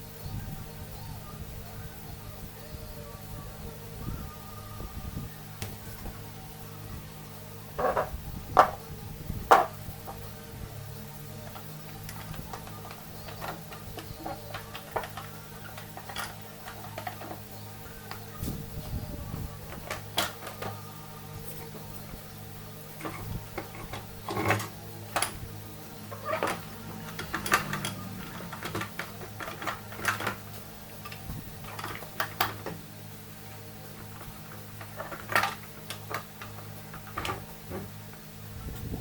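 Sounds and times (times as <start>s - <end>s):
faint music: 0.0s - 39.0s
tools and metal parts clinking: 7.8s - 8.8s, 11.3s - 18.8s, 19.6s - 20.8s, 22.9s - 32.9s, 33.9s - 38.0s.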